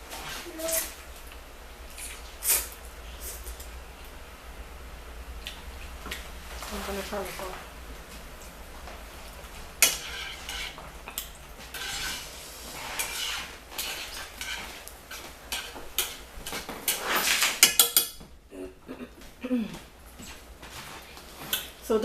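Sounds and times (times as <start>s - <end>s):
utensils clinking against bowl: 13.0s - 18.3s.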